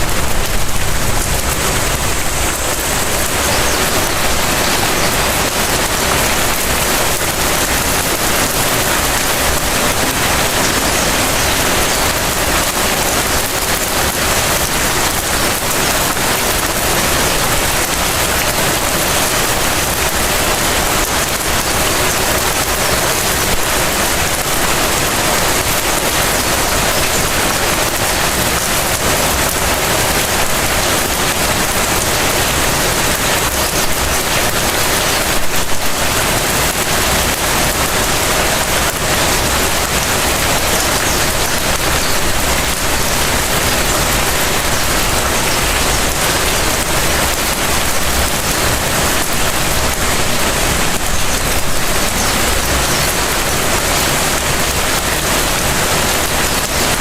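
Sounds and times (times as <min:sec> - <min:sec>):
light rain patter: 0:00.0 - 0:57.0.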